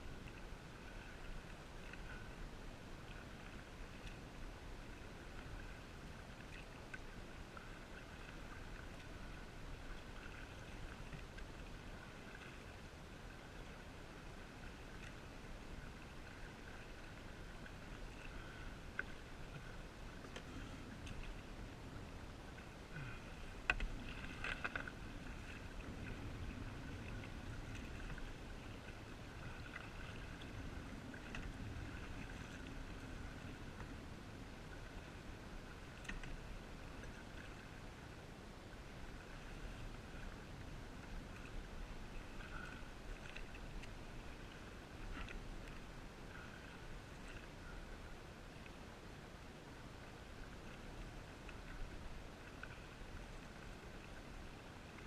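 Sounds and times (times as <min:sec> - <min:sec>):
faint water paddling noise: 0:00.0 - 0:55.0
steady low rumble: 0:14.2 - 0:48.2.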